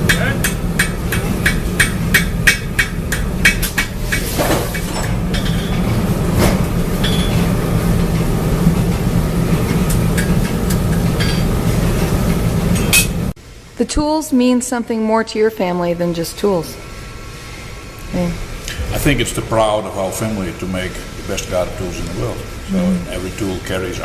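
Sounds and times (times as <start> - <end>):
hammer striking metal: 0.0 - 7.5, 9.7 - 11.6, 12.8 - 13.2
factory machinery hum: 0.0 - 24.0
metal clanks: 0.1 - 7.5, 9.6 - 11.5.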